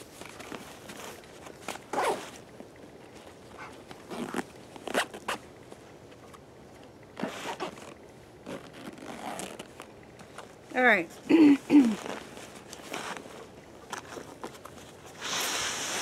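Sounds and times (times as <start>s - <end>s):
backpack zippers opening and closing: 1.8s - 2.4s, 3.6s - 5.4s, 7.2s - 9.8s.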